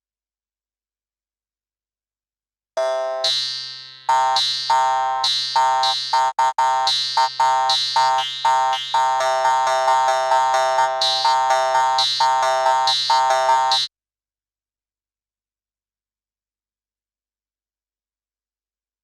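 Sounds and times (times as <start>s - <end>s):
ringing plucked instrument notes: 2.8s - 13.9s.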